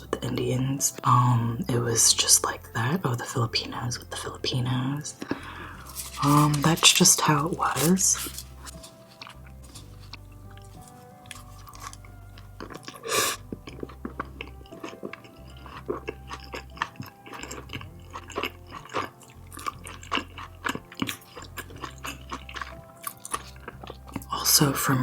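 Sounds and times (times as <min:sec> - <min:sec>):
chewing food: 0:00.0 - 0:25.0
crunchy chewing noise: 0:05.1 - 0:25.0.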